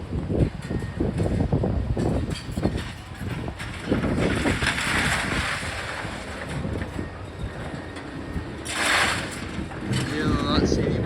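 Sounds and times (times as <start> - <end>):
demolition machinery rumble: 0.0 - 11.0
clattering: 2.2 - 10.5.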